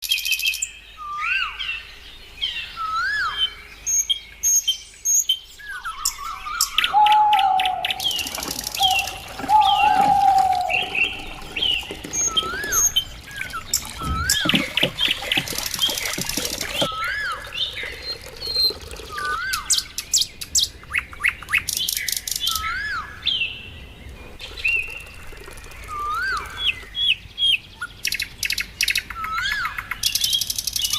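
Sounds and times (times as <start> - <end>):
birds chirping: 0.4 - 30.9
bird whistling rising note: 6.9 - 13.0
bird rattling trills: 7.8 - 16.9.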